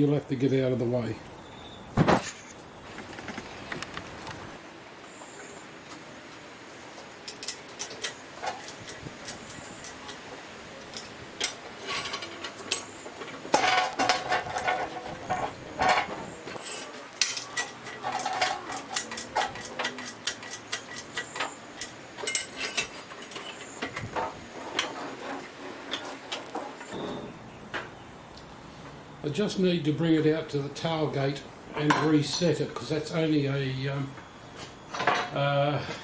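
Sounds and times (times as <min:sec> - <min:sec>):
metal clanking and knocking: 0:02.0 - 0:03.5, 0:13.5 - 0:16.4.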